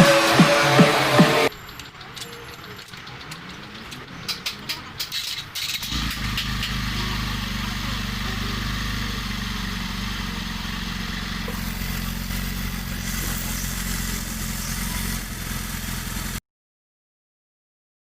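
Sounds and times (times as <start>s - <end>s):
motorcycle engine idling: 5.8s - 16.4s.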